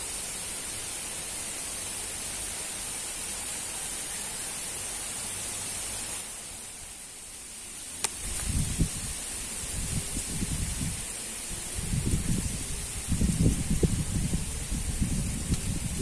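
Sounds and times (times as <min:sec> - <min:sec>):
outdoor hiss: 0:00.0 - 0:16.0
sharp click: 0:08.0 - 0:08.6
low rumbling on microphone: 0:08.2 - 0:16.0.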